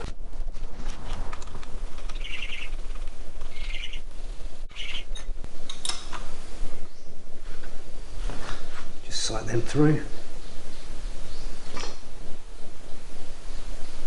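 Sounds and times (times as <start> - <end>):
steady low hum: 0.0 - 14.0
bird chirping: 2.1 - 4.1, 4.7 - 5.3.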